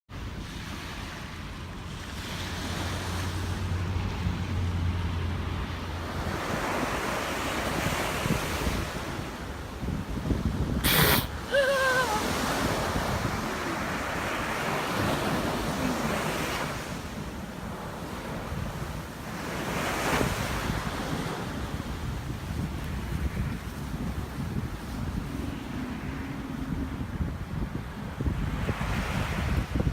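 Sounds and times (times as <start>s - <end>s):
surf washing on shore: 0.1s - 29.9s
wind on microphone: 0.2s - 29.9s
seal sneezing: 10.8s - 12.3s.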